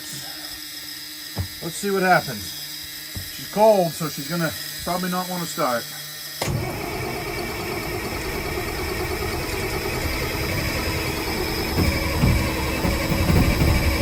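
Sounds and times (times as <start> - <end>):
starter cranking truck engine: 6.4 - 14.0
uneven low engine pulses: 6.5 - 14.0.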